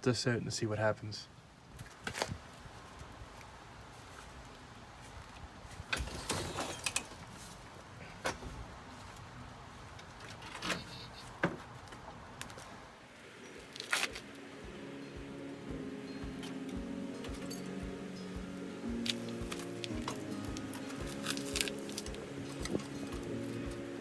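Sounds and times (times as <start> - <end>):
background music: 14.2 - 24.0.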